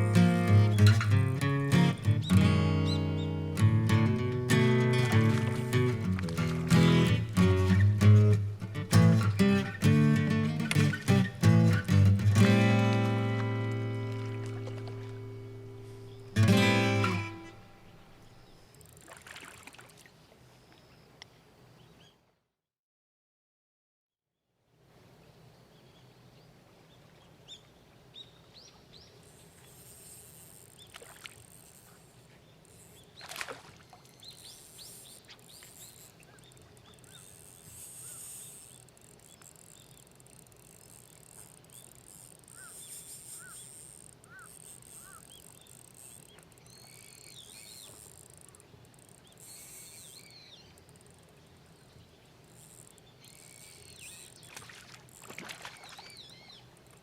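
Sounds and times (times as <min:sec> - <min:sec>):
small birds chirping: 0:00.0 - 0:19.2, 0:25.3 - 0:57.0
sharp click: 0:10.6 - 0:11.1.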